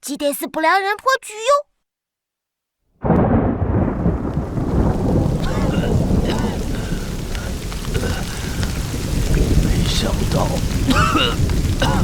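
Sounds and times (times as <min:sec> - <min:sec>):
heavy rain: 0:03.0 - 0:12.0
thunder rumbling: 0:03.0 - 0:12.0.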